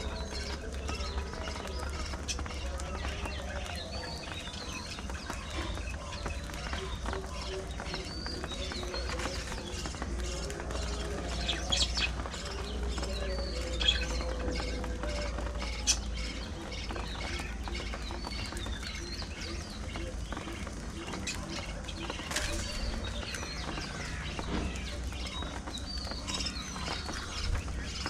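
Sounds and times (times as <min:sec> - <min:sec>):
budgerigars chirping and chattering: 0:00.0 - 0:28.0
sharp bird calls: 0:00.0 - 0:28.0.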